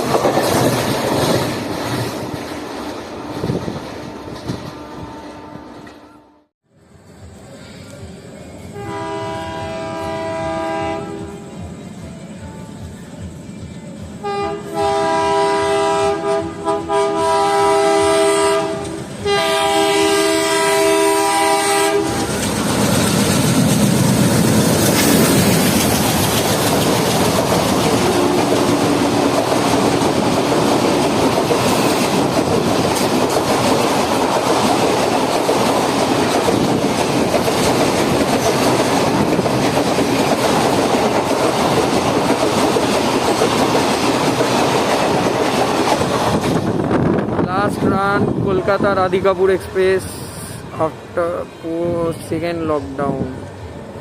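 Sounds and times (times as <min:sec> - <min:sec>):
train passing at speed: 0:00.0 - 0:54.0
locomotive air horn: 0:04.7 - 0:06.5, 0:08.7 - 0:11.5, 0:14.2 - 0:22.2, 0:28.0 - 0:29.3.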